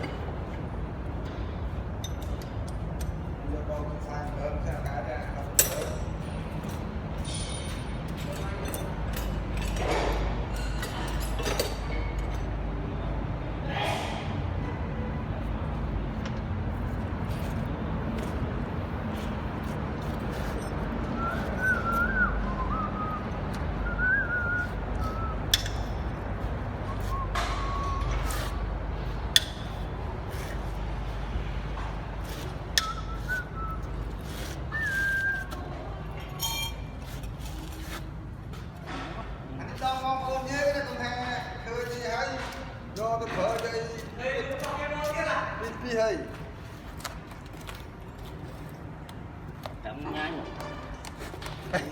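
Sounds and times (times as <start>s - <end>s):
ringing clink: 7.2s - 8.0s, 36.4s - 36.8s
engine rumbling: 9.0s - 37.5s
short whistled notes: 21.2s - 25.5s, 26.8s - 28.6s, 32.8s - 33.9s, 34.7s - 35.7s.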